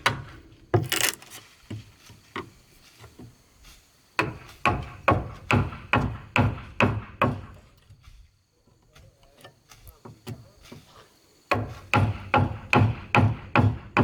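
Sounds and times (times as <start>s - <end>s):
tool striking wood: 0.8s - 1.2s.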